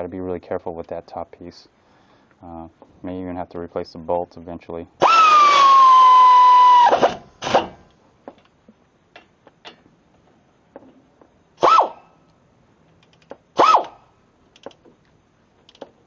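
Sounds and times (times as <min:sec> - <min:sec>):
air ratchet whine: 0:05.0 - 0:07.9, 0:11.6 - 0:12.1, 0:13.1 - 0:14.0
light metallic clicks of tools: 0:12.3 - 0:13.4.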